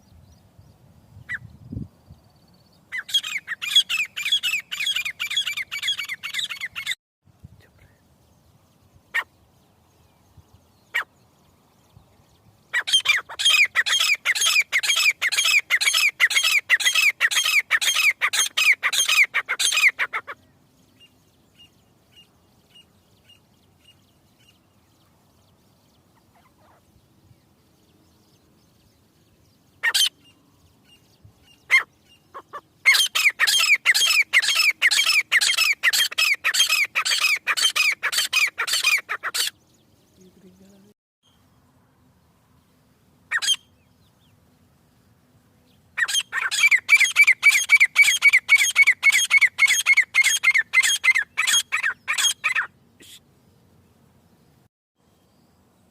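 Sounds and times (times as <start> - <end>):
faint bird chirps: 0.0 - 44.7, 45.6 - 53.5
francolin calling: 2.9 - 7.0, 12.7 - 24.7, 29.3 - 39.7, 43.3 - 44.3, 46.0 - 53.2.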